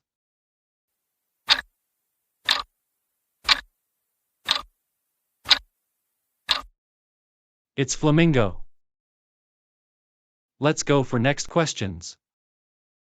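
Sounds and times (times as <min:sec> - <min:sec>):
clock ticking: 0:01.5 - 0:01.7, 0:02.5 - 0:02.7, 0:03.5 - 0:03.7, 0:04.5 - 0:04.7, 0:05.5 - 0:05.7, 0:06.5 - 0:06.7.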